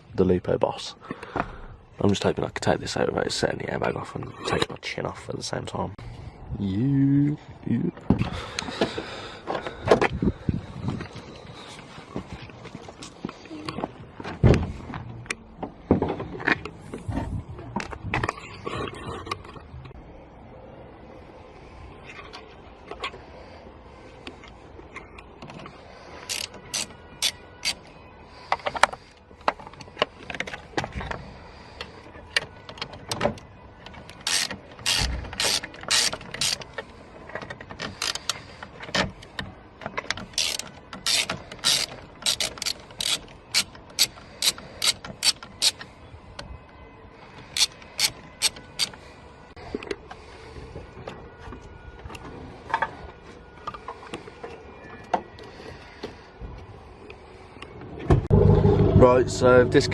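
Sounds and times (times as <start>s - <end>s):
ratchet wrench clicking: 26.3s - 27.8s, 34.2s - 36.7s, 38.0s - 38.4s, 40.4s - 45.8s, 47.5s - 48.9s.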